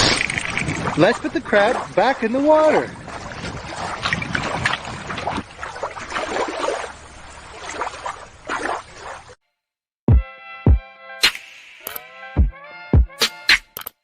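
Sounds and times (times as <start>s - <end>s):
water splashing and sloshing: 0.0s - 9.4s.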